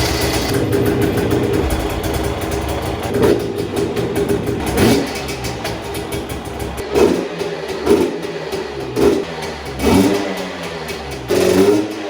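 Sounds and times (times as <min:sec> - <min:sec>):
engine throttle blips: 0:00.0 - 0:09.2
dirt bike engine idling: 0:00.0 - 0:09.8.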